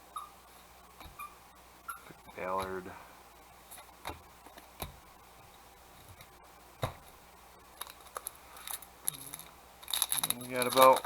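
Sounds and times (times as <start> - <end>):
faint low hum: 0.0 - 11.0
cards handled and flipped: 7.8 - 11.0.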